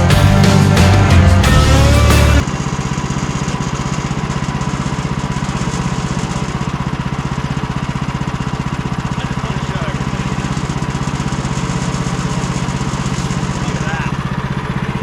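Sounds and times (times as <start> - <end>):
music: 0.0 - 2.4
small gasoline engine running: 0.0 - 15.0.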